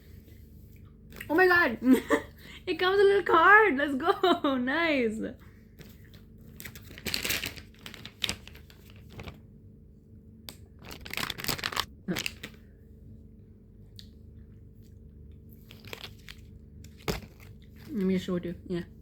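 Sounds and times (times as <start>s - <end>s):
snack packaging crinkling: 5.8s - 9.5s, 10.5s - 12.7s, 15.4s - 18.3s.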